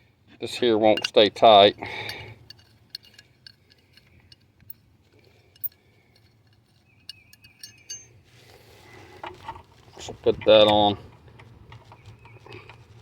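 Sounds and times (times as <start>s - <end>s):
nut and bolt clinking: 0.4s - 8.2s.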